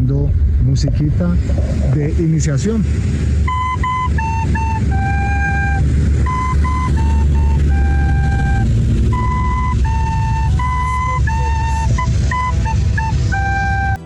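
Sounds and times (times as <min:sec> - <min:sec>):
steady low rumble: 0:00.0 - 0:14.0
flute tune: 0:03.4 - 0:14.0.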